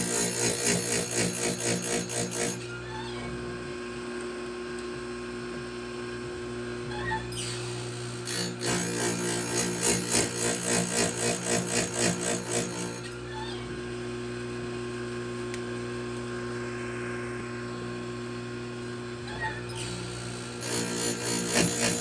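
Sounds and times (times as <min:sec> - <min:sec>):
chain grinder motor running: 0:00.0 - 0:02.7, 0:08.2 - 0:13.4, 0:19.3 - 0:22.0
grinding stone rasping chain: 0:00.0 - 0:02.7, 0:08.2 - 0:13.1, 0:20.6 - 0:22.0.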